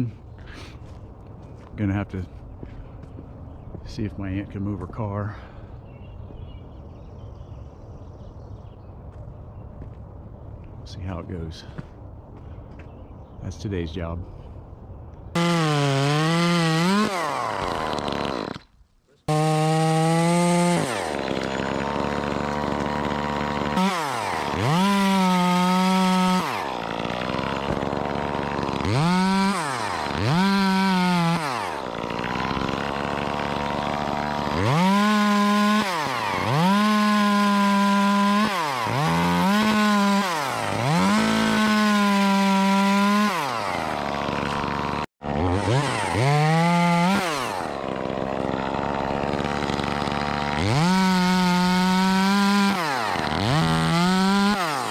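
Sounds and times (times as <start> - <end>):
chainsaw revving and idling: 15.3 - 54.9.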